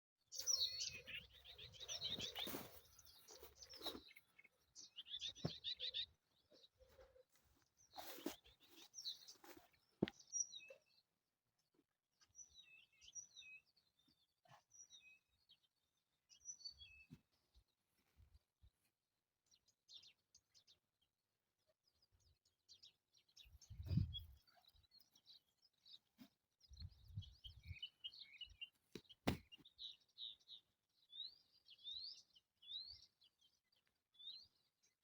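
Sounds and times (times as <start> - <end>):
songbirds singing: 0.0 - 35.0.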